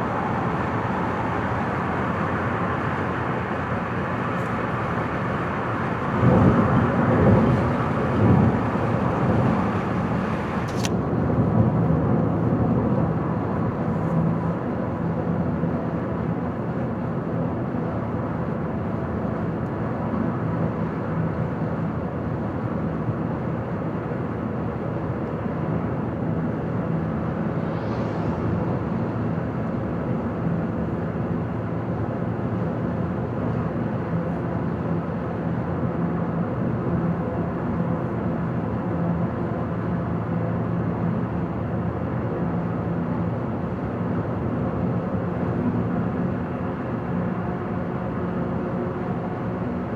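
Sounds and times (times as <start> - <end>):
low engine hum: 0.0 - 49.9
road and tyre noise: 0.0 - 49.9
sharp click: 10.7 - 11.0.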